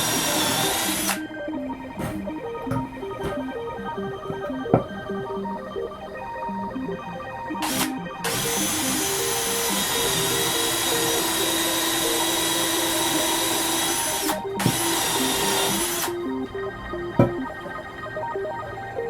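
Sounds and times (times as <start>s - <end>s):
power tool whining: 0.0s - 1.4s, 7.6s - 16.2s
background music: 0.0s - 19.0s.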